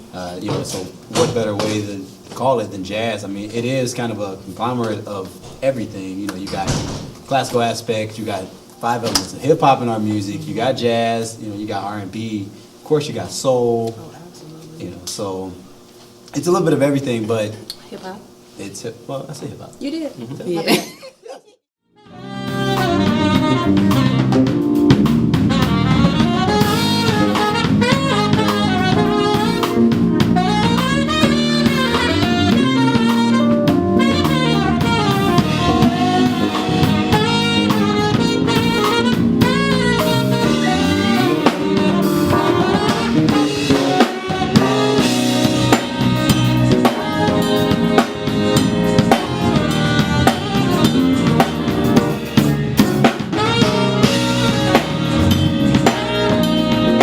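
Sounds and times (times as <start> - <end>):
drum kit: 0.0 - 1.9, 22.1 - 57.0
saxophone melody: 21.8 - 57.0
walking bass line: 22.1 - 57.0.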